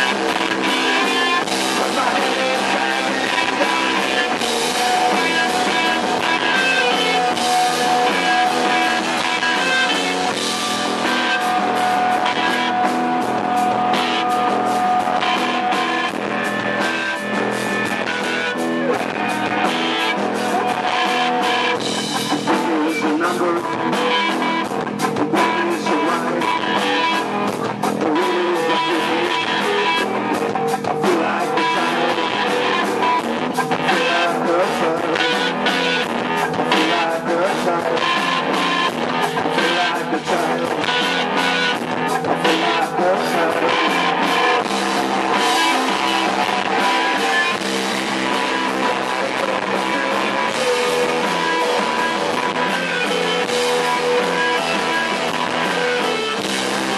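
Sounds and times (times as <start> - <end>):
rock music with guitar and drums: 0.0 - 56.9.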